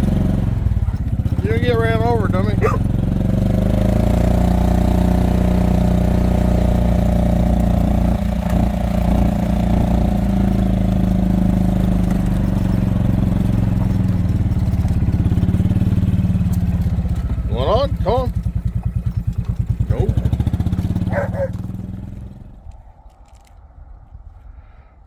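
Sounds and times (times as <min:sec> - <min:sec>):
vehicle engine running: 0:00.0 - 0:22.8.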